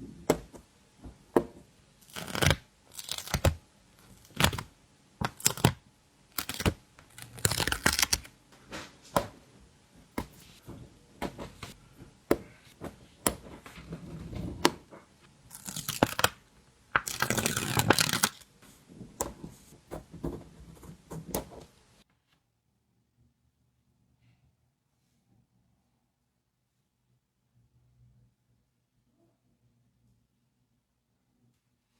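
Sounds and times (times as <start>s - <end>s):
paper and plastic crinkling: 2.0s - 5.8s, 6.4s - 8.9s, 13.4s - 16.4s, 17.0s - 18.8s
stickers being peeled: 2.0s - 8.3s, 15.5s - 18.4s.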